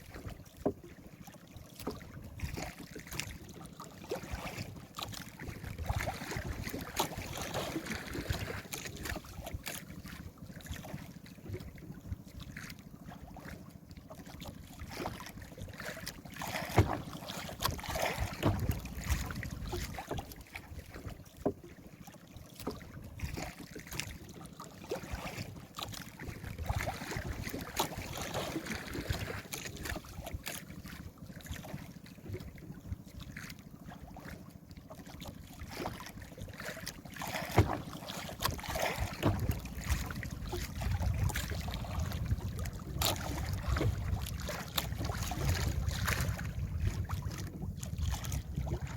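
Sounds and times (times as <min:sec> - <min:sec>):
knocks on boat: 0:00.0 - 0:01.0, 0:04.1 - 0:12.8, 0:13.4 - 0:21.8, 0:22.5 - 0:33.5, 0:34.2 - 0:48.8
water sloshing against boat: 0:00.0 - 0:48.9
wind on microphone: 0:39.0 - 0:48.9.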